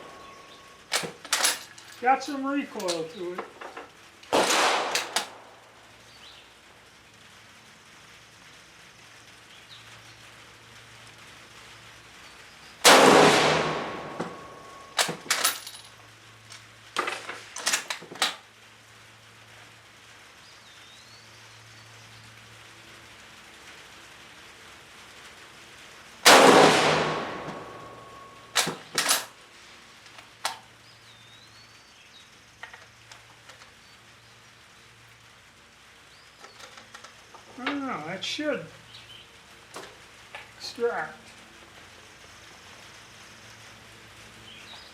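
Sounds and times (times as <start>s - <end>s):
rifle bolt metallic clacks: 0.9s - 1.8s, 2.8s - 5.4s, 28.6s - 29.3s
rifle shots with echo: 4.3s - 5.5s, 12.8s - 15.3s, 26.3s - 29.3s.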